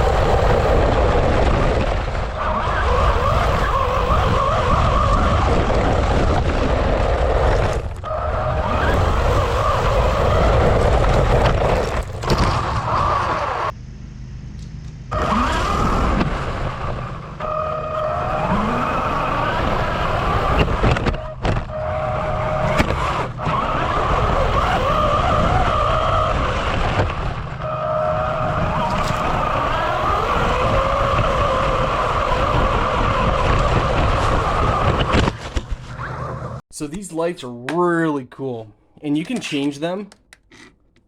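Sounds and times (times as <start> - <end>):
electric motor whining: 0.0 - 13.8, 14.8 - 36.6
tyres and gears noise: 0.0 - 37.0.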